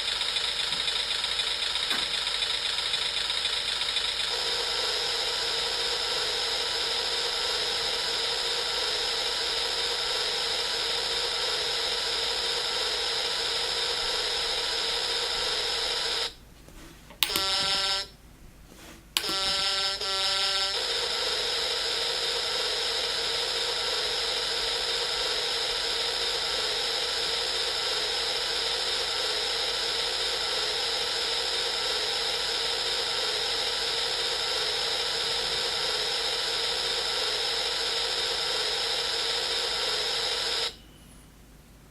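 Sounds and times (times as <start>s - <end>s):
sharp click: 19.2s - 19.6s.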